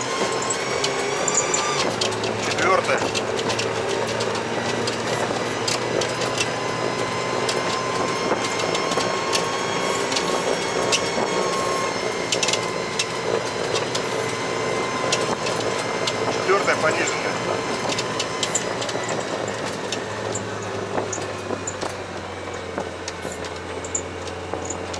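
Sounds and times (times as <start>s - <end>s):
vehicle engine drone: 0.0s - 24.9s
thin steady whine: 5.4s - 22.8s.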